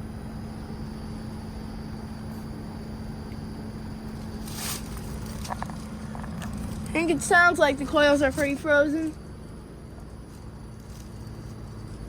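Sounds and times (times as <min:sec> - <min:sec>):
heat pump humming: 0:00.0 - 0:12.0.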